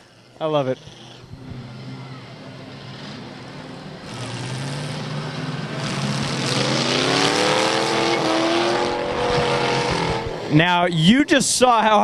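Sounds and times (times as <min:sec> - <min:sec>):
car engines running: 0:00.0 - 0:12.0
car engine revving hard: 0:04.0 - 0:10.5.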